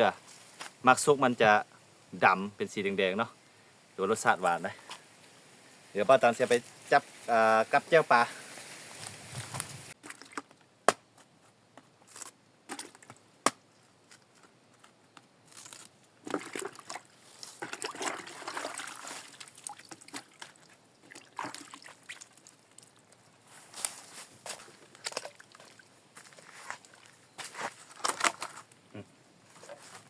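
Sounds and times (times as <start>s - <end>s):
water sloshing and trickling: 16.2s - 23.4s, 24.6s - 27.2s.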